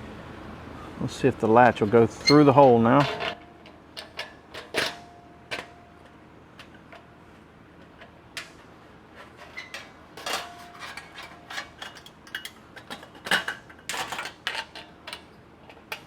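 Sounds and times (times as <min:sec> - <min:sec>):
metal latch parts clinking: 0:01.8 - 0:07.1, 0:09.3 - 0:16.0.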